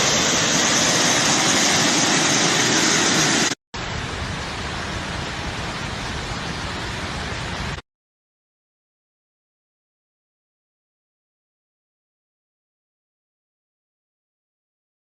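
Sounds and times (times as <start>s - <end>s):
rushing floodwater: 0.0s - 7.8s.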